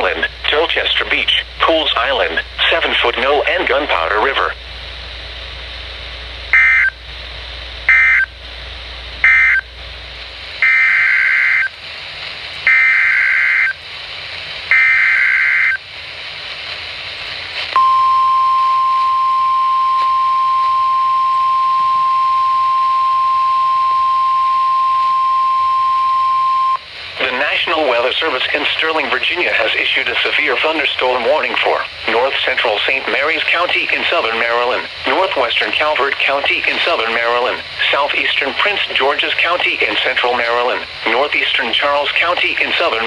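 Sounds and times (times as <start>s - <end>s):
steady alarm tone: 6.5s - 7.0s, 7.8s - 8.4s, 9.2s - 9.7s, 10.6s - 11.8s, 12.6s - 13.8s, 14.7s - 15.8s, 17.8s - 26.9s
screeching digital data bursts: 10.6s - 11.7s, 12.7s - 13.8s, 14.7s - 15.8s.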